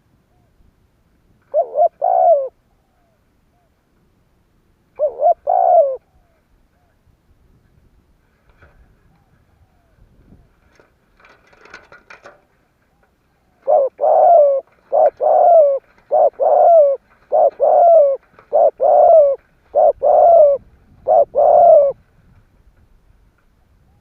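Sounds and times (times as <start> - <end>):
dove cooing: 1.4 - 3.7, 4.9 - 7.0, 12.9 - 22.0.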